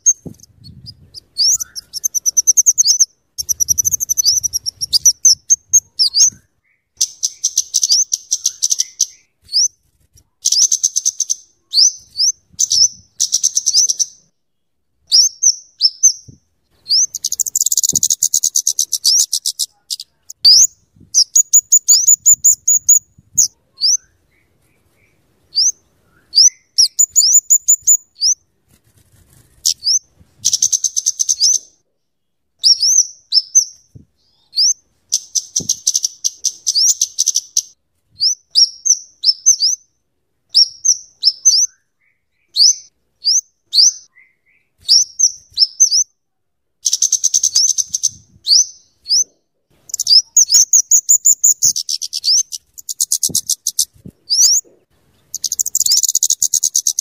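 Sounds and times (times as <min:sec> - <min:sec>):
bird ticking chatter: 0:01.4 - 0:05.7, 0:07.0 - 0:09.2, 0:17.0 - 0:23.0, 0:26.5 - 0:28.0, 0:49.9 - 0:54.6, 0:55.3 - 0:57.0.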